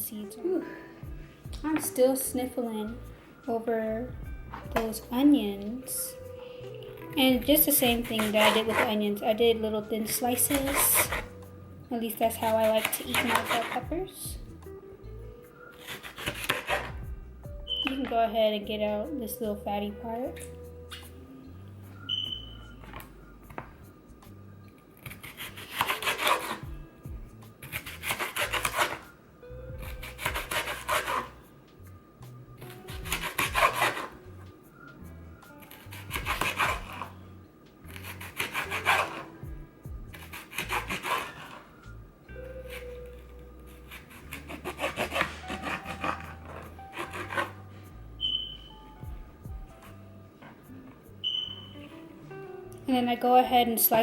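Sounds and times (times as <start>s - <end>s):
knife cutting on a cutting board: 7.8s - 9.0s, 10.2s - 11.3s, 12.4s - 13.9s, 15.8s - 17.0s, 25.0s - 26.7s, 27.6s - 29.0s, 29.8s - 31.4s, 32.7s - 34.2s, 35.6s - 37.1s, 37.9s - 39.3s, 40.2s - 41.6s, 43.8s - 47.6s.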